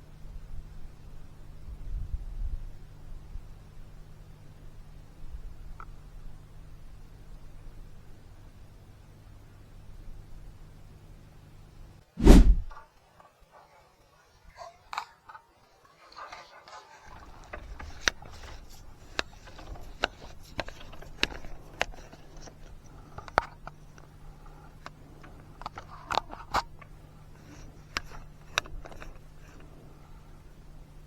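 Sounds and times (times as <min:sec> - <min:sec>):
low hum: 0:12.2 - 0:12.8.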